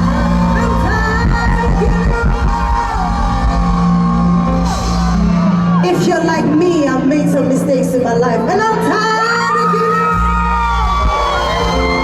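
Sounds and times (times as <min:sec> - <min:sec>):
live band music: 0:00.0 - 0:07.2, 0:09.6 - 0:12.0.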